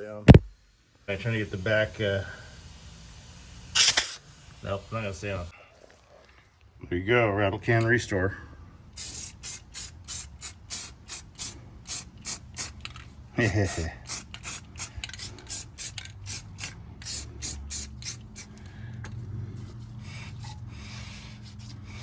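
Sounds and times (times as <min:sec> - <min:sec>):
steady hiss: 0:00.0 - 0:05.5, 0:09.0 - 0:18.6.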